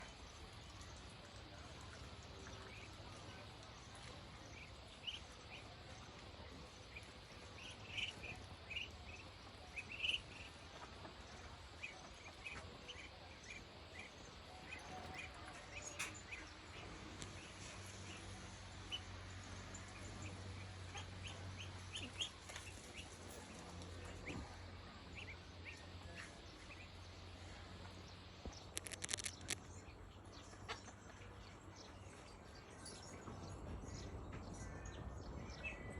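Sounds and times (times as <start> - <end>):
faint low hum: 0.0 - 35.9
chickens chirping: 0.7 - 27.9
sharp clicks: 28.6 - 29.6.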